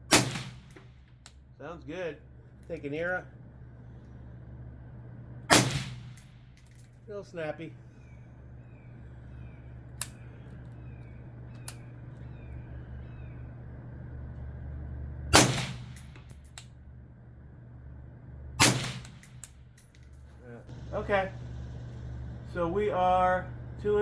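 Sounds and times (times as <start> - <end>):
suppressed rifle shots: 0.1 - 0.9, 5.5 - 6.3, 15.3 - 16.1, 18.6 - 19.5.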